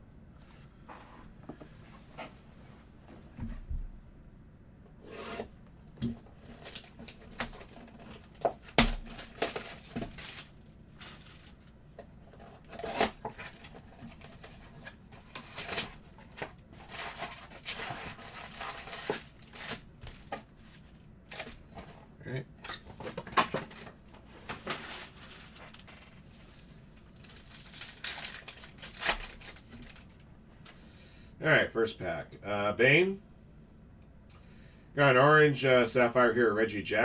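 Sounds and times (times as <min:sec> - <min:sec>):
wrappers crinkling and tearing: 0:06.4 - 0:11.7, 0:12.4 - 0:21.8, 0:22.7 - 0:30.2.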